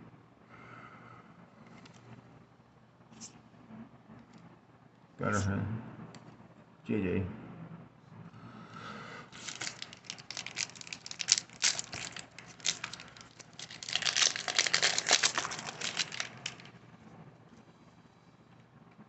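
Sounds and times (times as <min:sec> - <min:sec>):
foil wrapper crinkling and tearing: 0:09.3 - 0:16.7.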